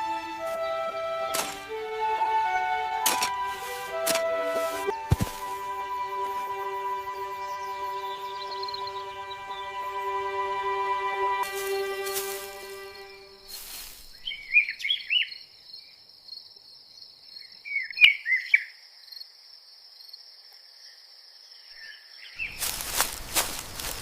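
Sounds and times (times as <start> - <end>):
background music: 0.0 - 13.8
bird chirps: 7.0 - 9.8, 11.5 - 16.0, 21.6 - 24.0
crickets trilling: 22.4 - 24.0.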